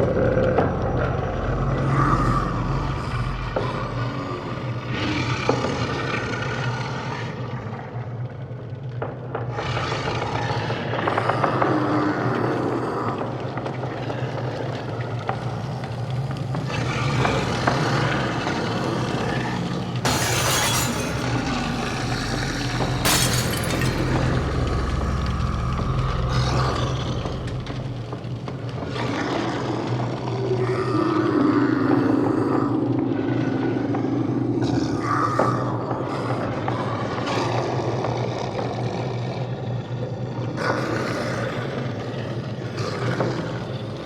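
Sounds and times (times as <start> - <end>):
low drone: 0.0 - 6.8, 10.7 - 30.8
grinding scraping textures: 13.5 - 29.1
sharp crashes: 17.5 - 28.7.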